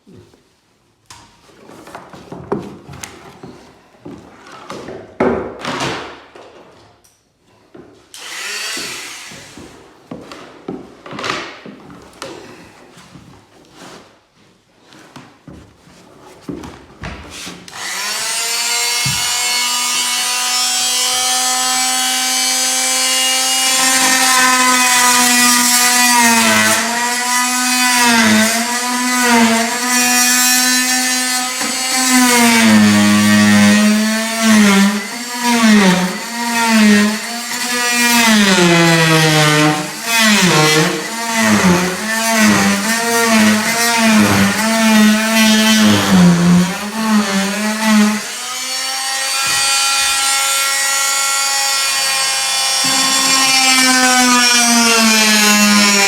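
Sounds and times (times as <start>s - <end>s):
power tool cutting wood: 8.1s - 9.7s, 17.7s - 56.0s.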